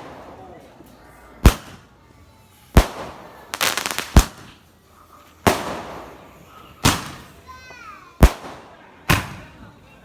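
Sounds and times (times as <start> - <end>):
fireworks crackling pops: 1.4 - 2.0, 2.7 - 4.7, 6.8 - 7.4, 8.2 - 9.5
fireworks bang with echo: 2.8 - 4.6, 5.5 - 6.1, 6.8 - 7.3, 8.2 - 9.5.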